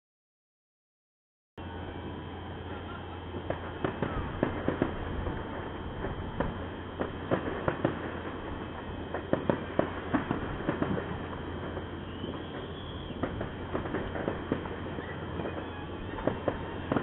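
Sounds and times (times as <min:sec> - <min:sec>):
constant low rumble: 0:01.6 - 0:17.0
distant fireworks bangs and pops: 0:02.6 - 0:17.0
faint rising whistle: 0:11.9 - 0:13.3.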